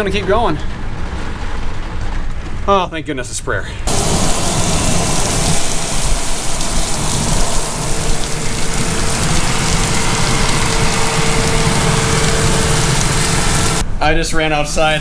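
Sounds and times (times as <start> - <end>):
faint steady hum: 3.9 - 13.8
heavy rain downpour: 3.9 - 13.8.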